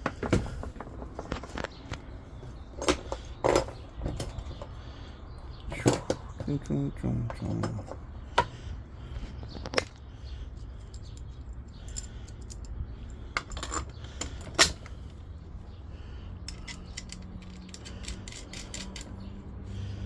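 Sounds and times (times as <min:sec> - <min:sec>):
metallic clinks of hand tools: 0:16.5 - 0:19.3.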